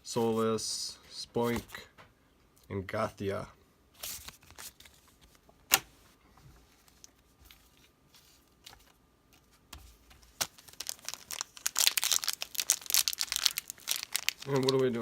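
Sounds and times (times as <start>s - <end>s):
foil wrappers crinkling: 10.2s - 15.0s.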